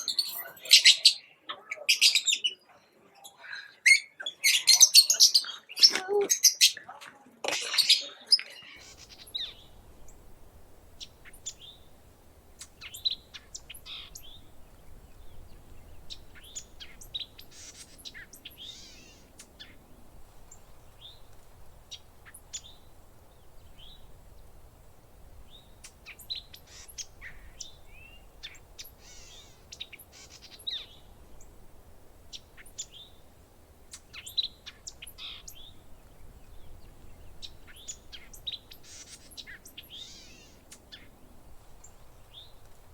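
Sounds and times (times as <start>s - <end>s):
birds chirping: 0.0s - 2.6s, 7.6s - 42.9s
faint steady hum: 8.8s - 42.9s.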